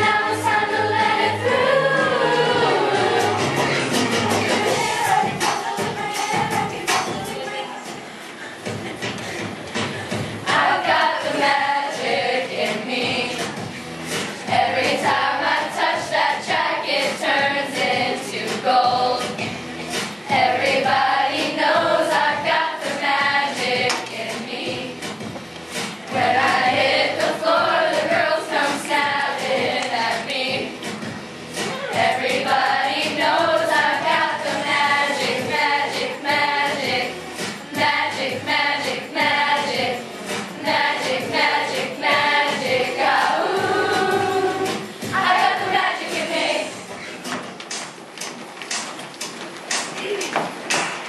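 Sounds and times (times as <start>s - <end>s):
steady music beat: 0.0s - 11.7s
children singing pop songs: 0.0s - 51.0s.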